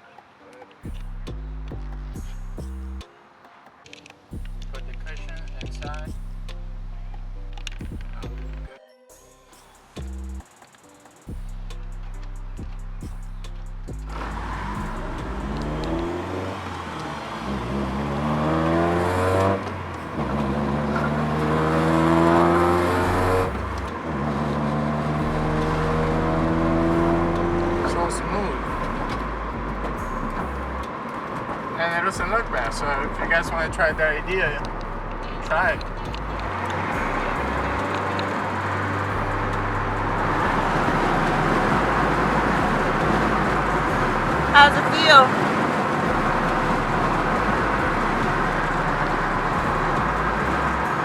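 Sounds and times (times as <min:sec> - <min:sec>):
car engine accelerating through gears: 0:11.3 - 0:51.0.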